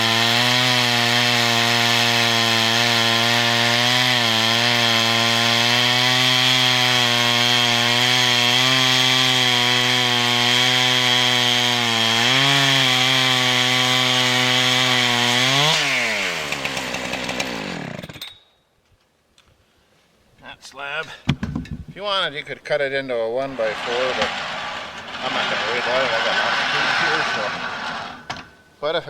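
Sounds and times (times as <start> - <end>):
chainsaw ripping a log: 0.0 - 18.2, 23.4 - 28.4.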